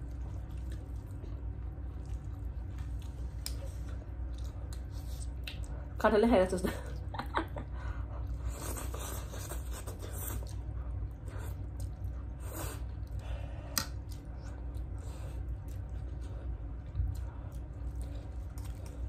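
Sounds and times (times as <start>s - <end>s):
wet chewing: 0.0s - 6.0s, 8.0s - 19.0s
low steady hum: 0.0s - 19.0s.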